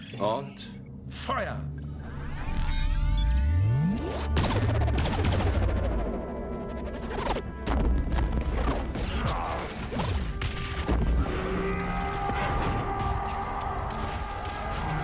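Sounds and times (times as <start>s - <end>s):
dramatic orchestral score: 4.3s - 15.0s.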